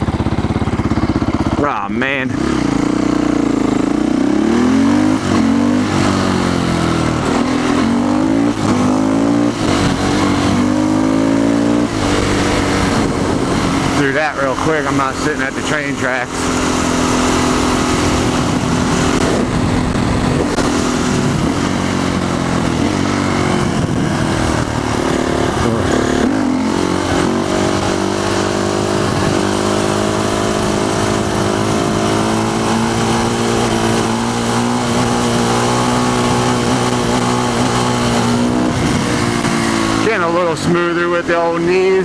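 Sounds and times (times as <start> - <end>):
motorcycle engine running: 0.0 - 42.0.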